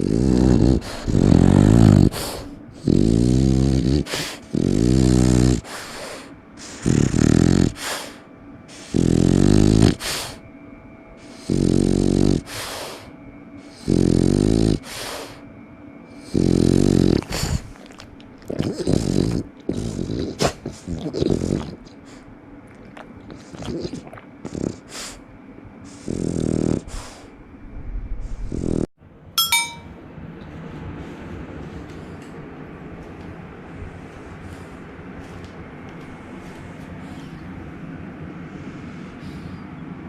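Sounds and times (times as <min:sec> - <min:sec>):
dog breathing: 0:00.0 - 0:10.4, 0:11.2 - 0:15.4, 0:16.1 - 0:27.4, 0:37.0 - 0:37.6, 0:38.4 - 0:39.9
dog snoring: 0:00.0 - 0:10.4, 0:11.2 - 0:15.4, 0:16.1 - 0:25.2, 0:25.8 - 0:27.3, 0:28.3 - 0:28.9.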